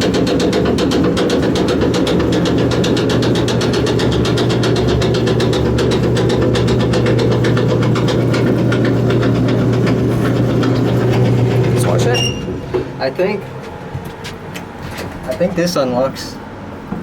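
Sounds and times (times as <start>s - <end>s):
rapid rattling tick: 0.0s - 12.0s
wheelchair lift motor humming: 0.0s - 15.4s.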